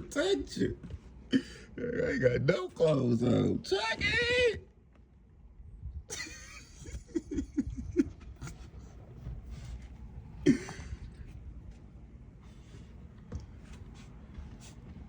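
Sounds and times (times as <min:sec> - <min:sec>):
man laughing: 0:01.3 - 0:02.4, 0:06.1 - 0:08.7, 0:10.4 - 0:11.0.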